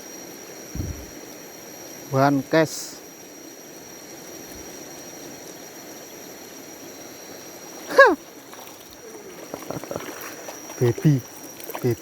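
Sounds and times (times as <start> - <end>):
steady outdoor hiss: 0.0 - 12.0.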